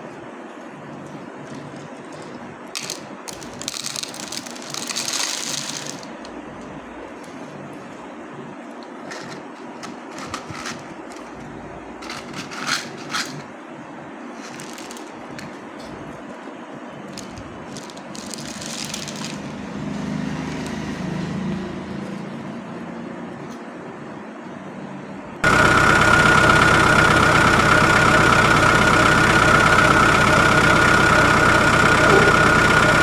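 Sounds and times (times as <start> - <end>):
gravel crunching under toy vehicles: 17.1 - 20.7
low hum: 30.5 - 33.0.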